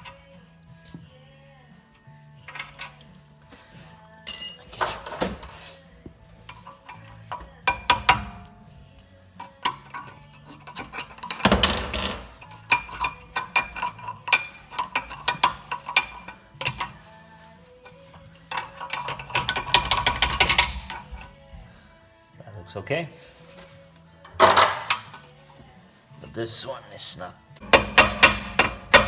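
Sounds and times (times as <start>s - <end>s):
metal parts clinking: 4.3s - 5.2s, 9.4s - 17.1s, 17.8s - 21.3s
scraping rattle: 6.2s - 17.2s, 17.8s - 21.7s.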